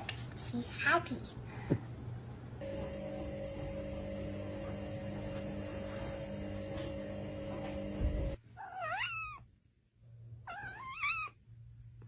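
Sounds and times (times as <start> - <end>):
low hum: 2.6 - 8.4
cat meowing: 8.6 - 9.4, 10.5 - 11.4.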